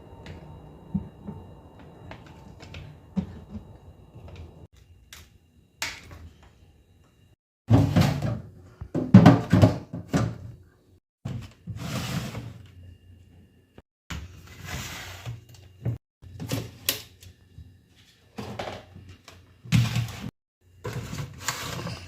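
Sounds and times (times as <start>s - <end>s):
containers knocking in refrigerator: 7.7s - 10.5s.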